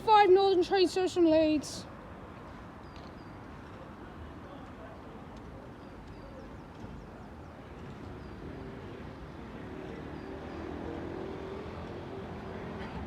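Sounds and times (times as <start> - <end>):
vehicle engine approaching: 8.5 - 13.0.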